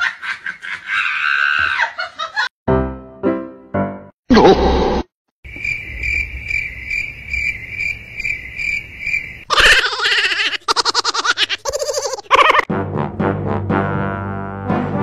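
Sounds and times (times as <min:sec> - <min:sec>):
loud pitched cries: 0:00.9 - 0:01.9, 0:09.5 - 0:12.7
cricket chirping: 0:05.5 - 0:09.6.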